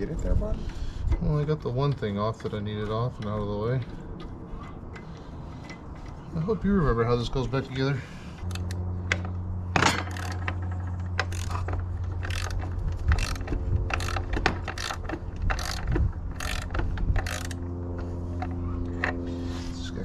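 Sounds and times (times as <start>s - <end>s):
steady low hum: 0.0s - 20.0s
socket ratchet clicking: 11.2s - 17.6s.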